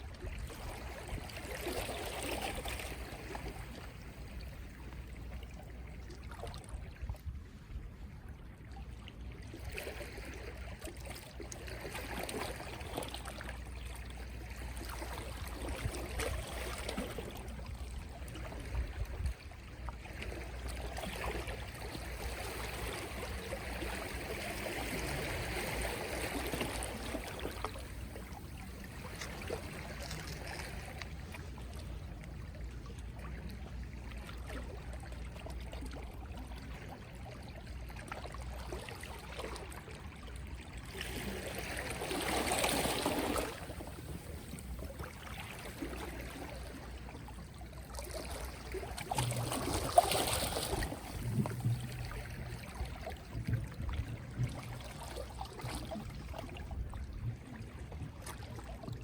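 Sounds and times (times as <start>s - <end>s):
sea waves lapping on shore: 0.0s - 59.0s.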